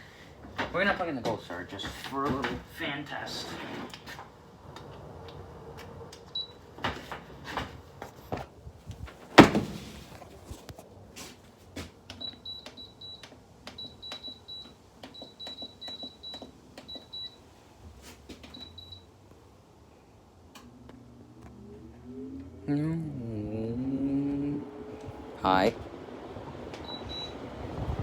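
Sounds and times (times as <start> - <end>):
loud thump: 9.4 - 10.1.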